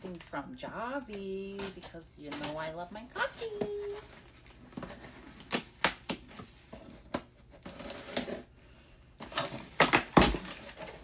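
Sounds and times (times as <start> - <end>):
box being handled and opened: 1.1 - 8.5, 9.2 - 11.0.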